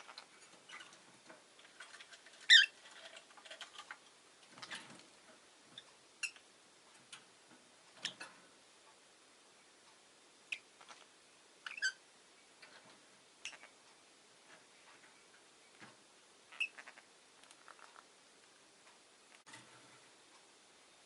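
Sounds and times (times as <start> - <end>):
lovebird chirps and clicks: 6.2 - 6.4, 10.5 - 11.0, 11.6 - 12.0, 13.4 - 13.7, 16.5 - 18.0.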